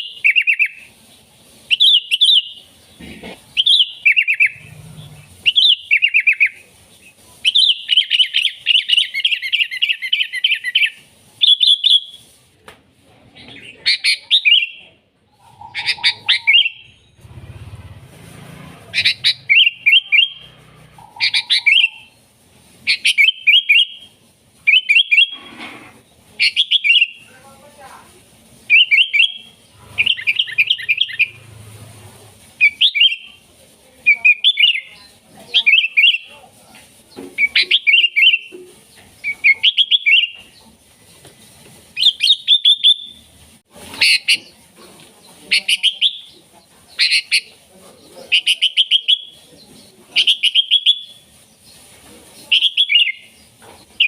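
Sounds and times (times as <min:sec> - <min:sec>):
bulbul singing: 0:00.0 - 0:01.0, 0:01.7 - 0:03.0, 0:03.6 - 0:06.6, 0:13.4 - 0:17.2, 0:18.9 - 0:22.2, 0:22.9 - 0:25.4, 0:26.4 - 0:27.3, 0:28.7 - 0:31.4, 0:32.6 - 0:33.4, 0:34.0 - 0:36.3, 0:37.3 - 0:40.6, 0:45.5 - 0:51.6, 0:52.5 - 0:54.0.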